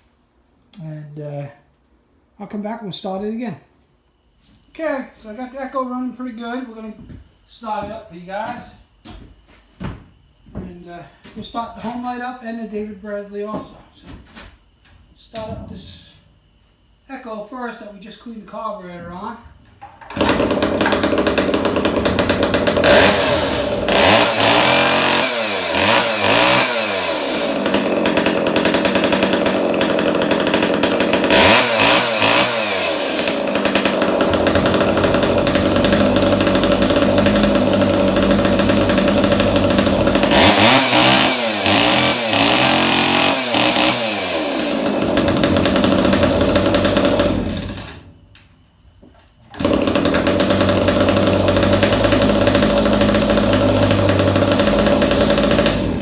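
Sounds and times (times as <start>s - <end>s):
chainsaw running and revving: 20.1s - 48.0s, 49.6s - 56.0s.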